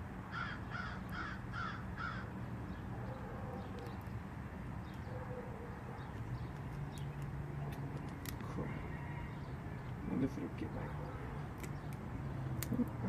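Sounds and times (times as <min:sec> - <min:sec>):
bird calling: 0:00.3 - 0:02.3.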